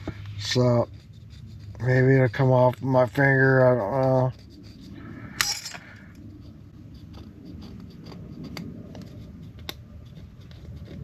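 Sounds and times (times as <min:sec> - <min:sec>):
finger rubbing metal surface: 0:00.4 - 0:02.8, 0:06.3 - 0:11.0.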